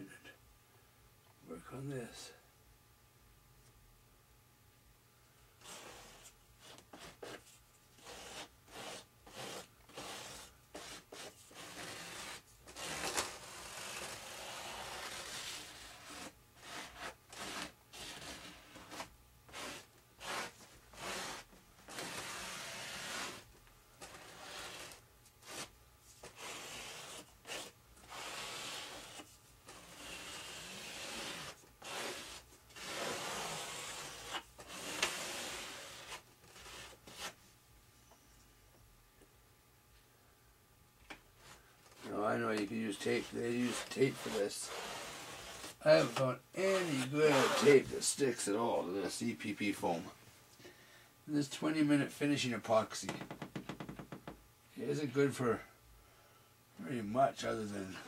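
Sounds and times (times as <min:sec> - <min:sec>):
scraper spreading epoxy: 0:08.0 - 0:37.4, 0:42.9 - 0:47.9.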